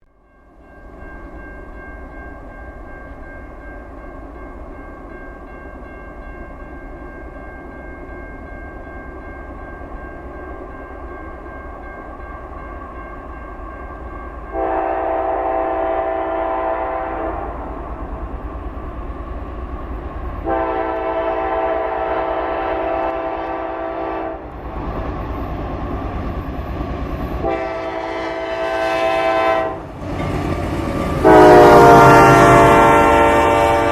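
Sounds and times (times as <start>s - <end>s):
train air horn blasts: 14.5s - 17.7s, 20.4s - 24.5s, 27.4s - 29.9s, 31.2s - 33.9s
locomotive rumble: 14.5s - 33.9s.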